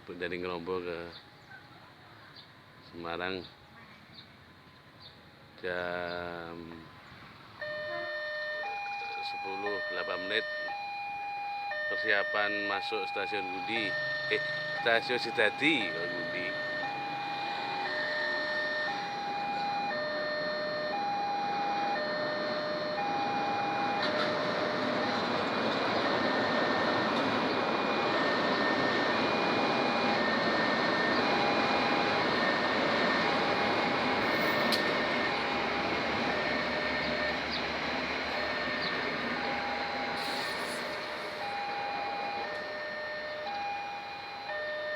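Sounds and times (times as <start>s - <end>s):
train rumble: 13.2s - 43.8s.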